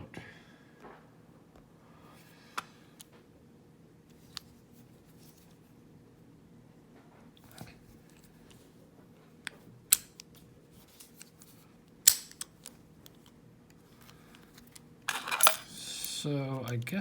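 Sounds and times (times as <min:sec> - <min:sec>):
padlock and tools clicking: 0:09.9 - 0:10.3, 0:12.0 - 0:13.4.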